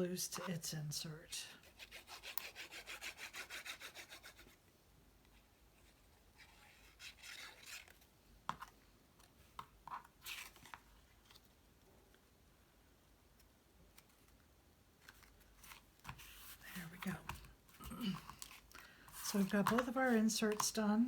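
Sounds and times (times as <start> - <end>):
rubbing on cardstock: 1.6 - 4.6
paper scuffs: 15.0 - 20.8.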